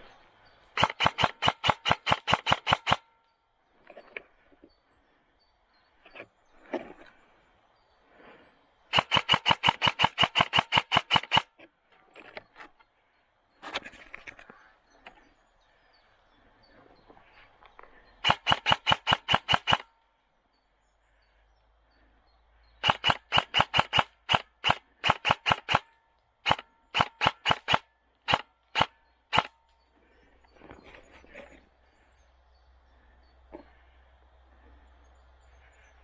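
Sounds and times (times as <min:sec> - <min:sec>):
airsoft rifle firing shots: 0:00.8 - 0:03.1, 0:08.9 - 0:11.5, 0:18.2 - 0:19.9, 0:22.8 - 0:29.6.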